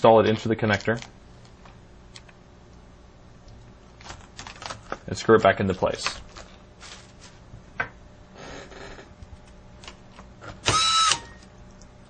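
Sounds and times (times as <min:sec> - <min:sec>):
electric screwdriver motor whine: 0:10.6 - 0:11.5.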